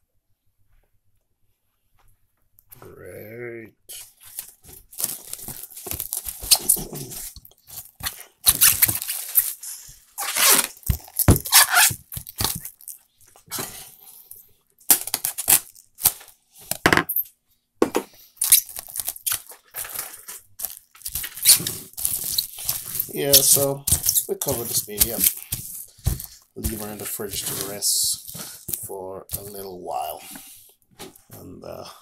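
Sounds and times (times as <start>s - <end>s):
food wrap crinkling and tearing: 4.0s - 13.5s, 14.2s - 16.8s, 18.3s - 30.4s.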